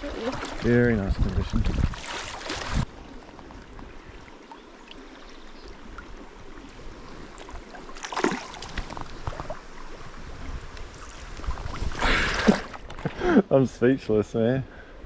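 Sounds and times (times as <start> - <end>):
water splash: 0.0 - 2.9, 7.4 - 9.6, 10.9 - 13.2
river water running over stones: 0.0 - 13.2.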